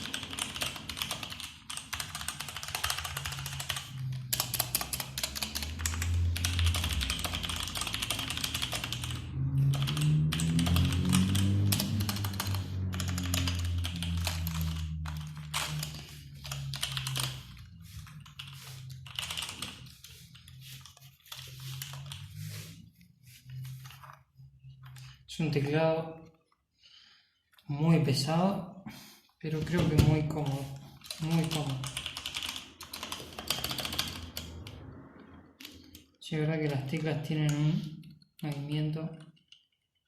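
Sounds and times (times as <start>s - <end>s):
typing on mechanical keyboard: 0.0s - 22.7s, 30.5s - 35.0s.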